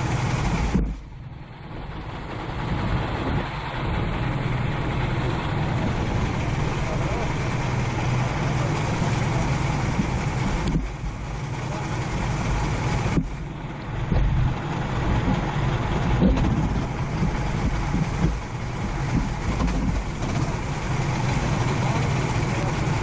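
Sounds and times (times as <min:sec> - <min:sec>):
kart engine running: 0:00.0 - 0:23.0.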